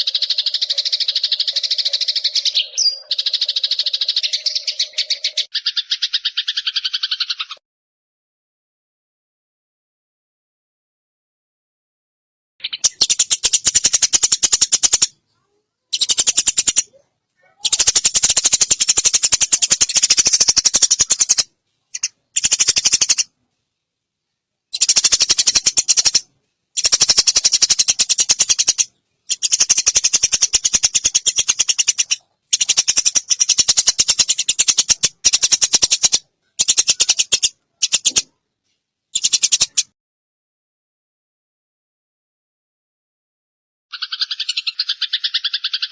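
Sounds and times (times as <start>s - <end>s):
sparrows chattering: 0.0s - 7.6s, 12.6s - 23.3s, 24.7s - 38.3s, 39.2s - 39.9s, 43.9s - 45.9s.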